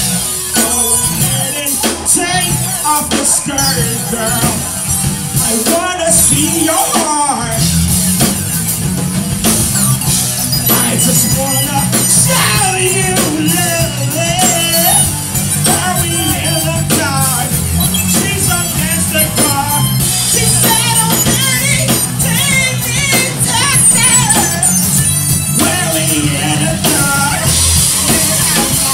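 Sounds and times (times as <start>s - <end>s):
drum kit: 0.0s - 28.9s
rock band playing: 0.0s - 28.9s
low bass line: 7.6s - 28.9s
person singing: 10.6s - 28.9s.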